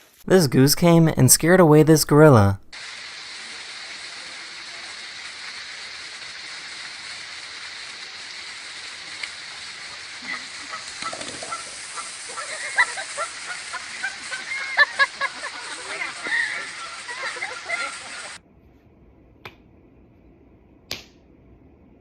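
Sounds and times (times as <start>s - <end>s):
steady background hiss: 0.0s - 18.4s
goose honking: 9.9s - 18.4s.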